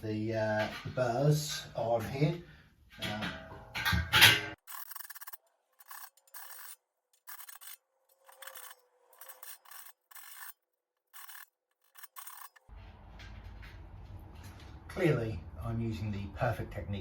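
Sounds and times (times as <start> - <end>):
hand file rasping on metal: 5.8 - 12.6.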